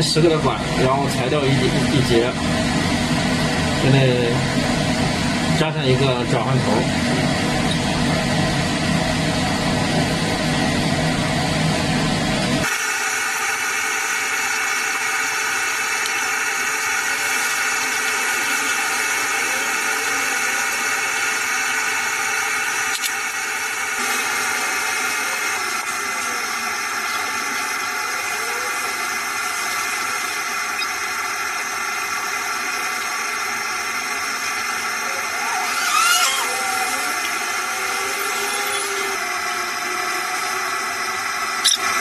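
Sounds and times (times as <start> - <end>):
machine hiss with high tones: 12.6 - 42.0.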